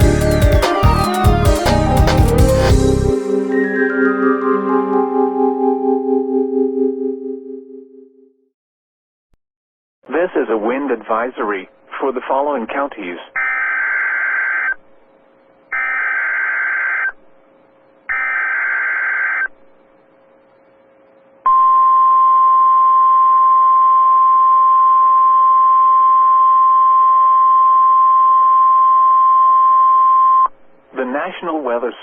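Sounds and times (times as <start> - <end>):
screeching digital data bursts: 13.4 - 14.8, 15.7 - 17.2, 18.1 - 19.5.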